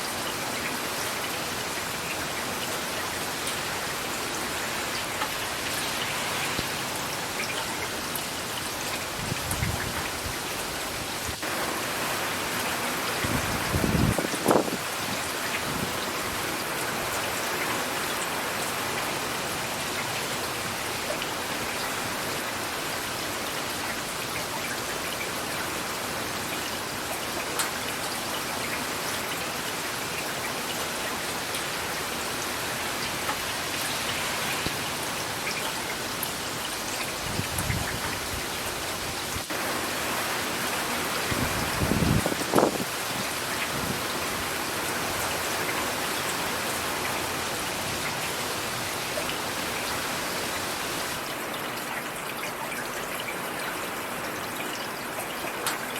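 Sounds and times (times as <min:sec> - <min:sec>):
steady rain: 0:00.0 - 0:55.9.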